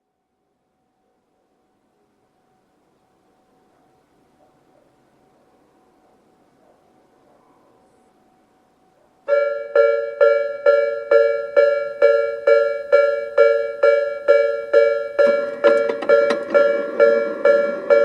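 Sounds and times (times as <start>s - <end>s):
level crossing warning bell: 9.3s - 18.0s.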